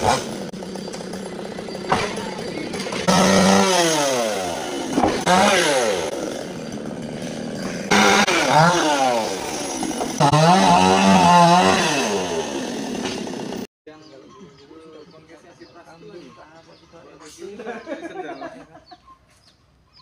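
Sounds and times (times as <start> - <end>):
chainsaw engine revving: 0.0 - 13.7.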